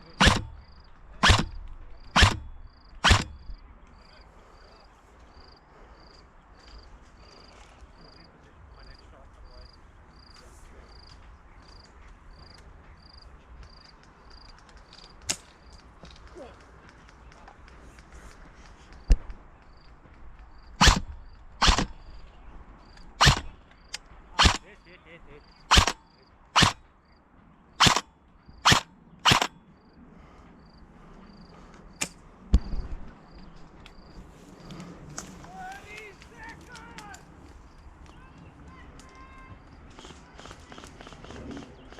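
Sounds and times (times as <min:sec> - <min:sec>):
airsoft gun shots: 0:00.0 - 0:03.6, 0:20.8 - 0:22.0, 0:23.2 - 0:23.6, 0:24.4 - 0:24.7, 0:25.7 - 0:26.0, 0:26.6 - 0:26.8, 0:27.8 - 0:29.6
sharp crack: 0:00.0 - 0:03.6, 0:15.0 - 0:16.6, 0:20.8 - 0:22.2, 0:23.0 - 0:24.8, 0:25.7 - 0:26.0, 0:26.6 - 0:26.9, 0:27.8 - 0:29.6
cricket chirping: 0:00.0 - 0:15.8, 0:19.7 - 0:24.8, 0:25.4 - 0:30.0, 0:30.6 - 0:35.3.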